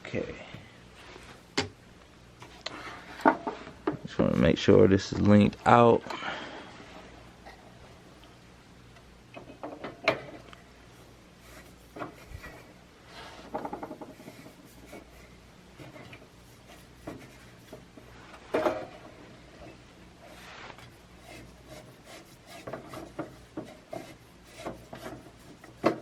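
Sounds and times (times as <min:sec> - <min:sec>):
plastic heater clicks and knocks: 0:09.3 - 0:10.5, 0:13.5 - 0:14.5, 0:24.6 - 0:26.0.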